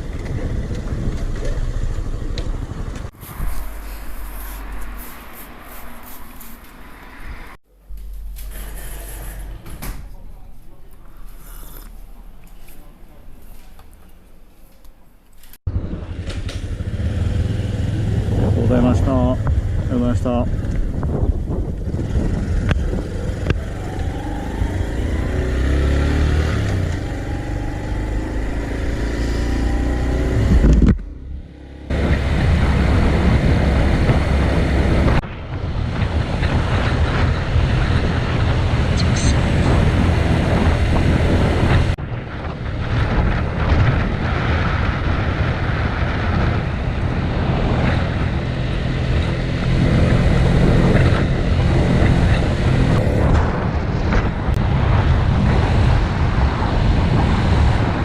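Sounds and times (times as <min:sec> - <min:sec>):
road and wind noise: 0:00.0 - 0:58.0.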